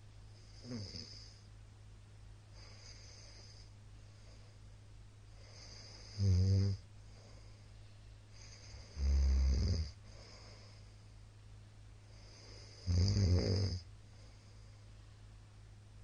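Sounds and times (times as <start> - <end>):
man snoring loudly: 0.5 - 1.3, 5.4 - 6.8, 8.5 - 10.0, 12.3 - 13.8.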